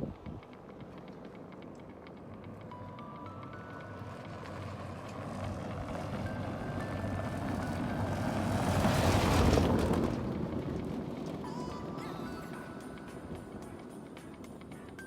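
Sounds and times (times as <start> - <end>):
vehicle passing by: 4.0 - 12.6.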